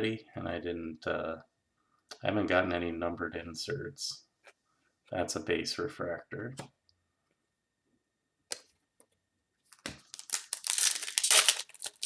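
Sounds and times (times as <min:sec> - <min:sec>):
foil wrapper tearing and crinkling: 0:09.7 - 0:12.0.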